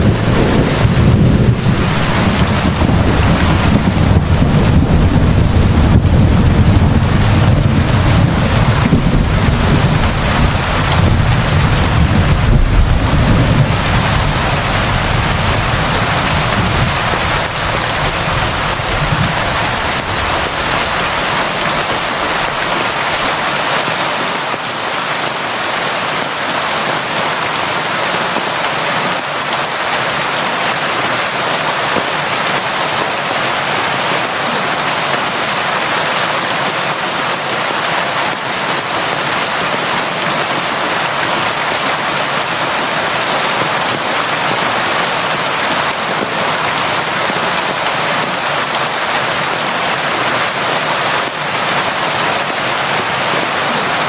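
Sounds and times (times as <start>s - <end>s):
steady rainfall: 0.0s - 54.0s.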